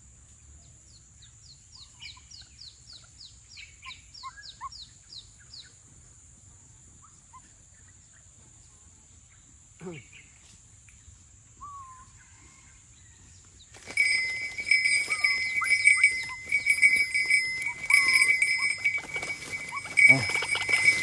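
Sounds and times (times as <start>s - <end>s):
waterhen harsh pulsing call: 13.9s - 21.0s.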